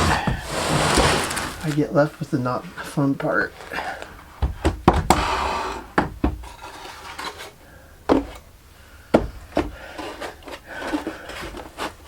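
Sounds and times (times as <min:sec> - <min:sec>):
scraping on wood: 0:00.0 - 0:01.9, 0:09.5 - 0:12.0
sharp wooden knocks: 0:04.4 - 0:05.4.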